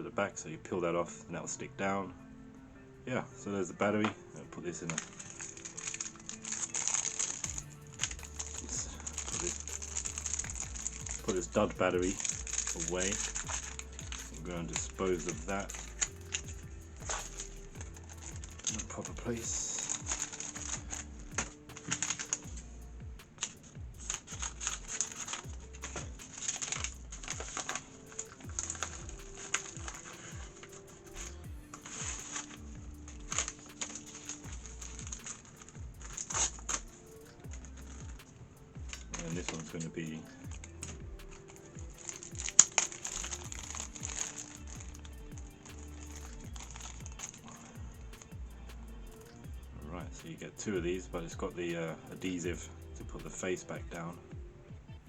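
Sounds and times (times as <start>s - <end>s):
background music: 0.0s - 55.0s
packaging crinkling: 4.9s - 22.5s
small objects clicking and tapping: 23.2s - 53.7s.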